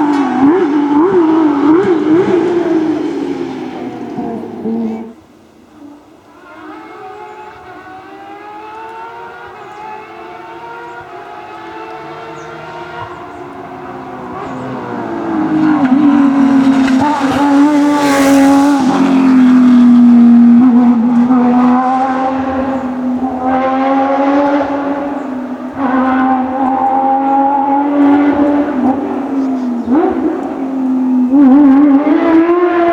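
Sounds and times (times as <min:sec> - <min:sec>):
racing car engine passing: 0:00.0 - 0:32.9.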